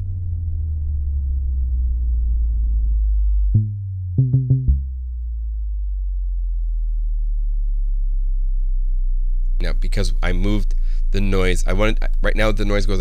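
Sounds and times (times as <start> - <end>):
deep synth sub bass: 0.0 - 13.0
boom hit with falling pitch: 3.6 - 5.2.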